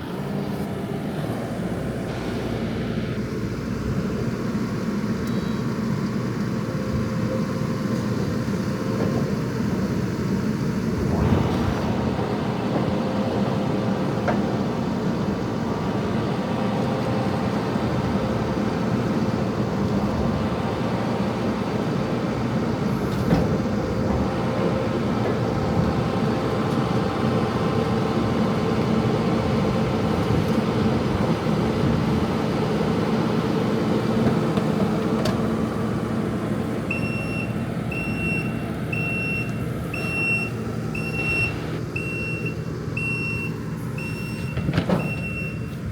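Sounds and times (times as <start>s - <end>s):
heavy vehicle engine running: 0.0s - 45.9s
reversing alarm beeping: 5.2s - 9.0s, 36.9s - 45.8s.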